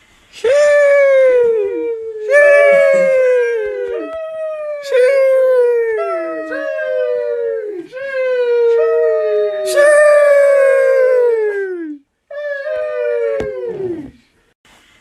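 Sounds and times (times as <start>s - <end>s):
high howl-like calls: 0.4s - 14.2s
short hiss: 14.7s - 15.0s.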